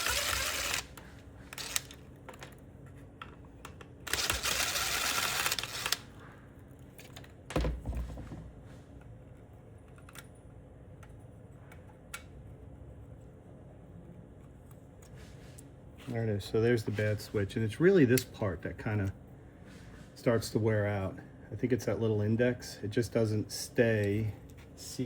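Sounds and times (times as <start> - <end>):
loud rasping burst: 0.0 - 1.0, 4.1 - 6.1
heavy thump: 7.5 - 8.5
light clicks of small parts: 9.8 - 12.4.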